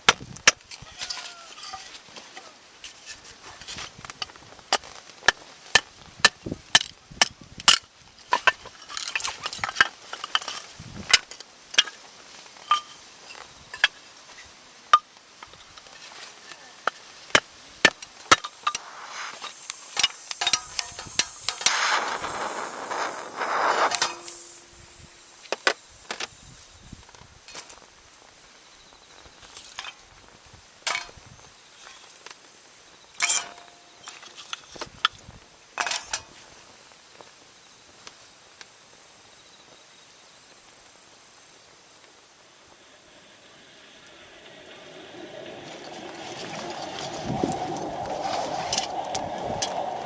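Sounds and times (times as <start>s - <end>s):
rising hiss: 18.5s - 26.8s, 41.6s - 50.0s.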